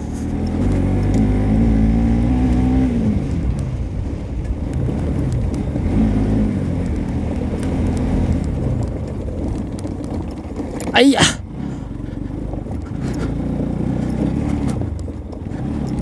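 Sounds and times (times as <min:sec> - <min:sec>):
motorcycle engine off-road: 0:00.0 - 0:16.0
clicks and knocks from bumps: 0:06.8 - 0:11.0.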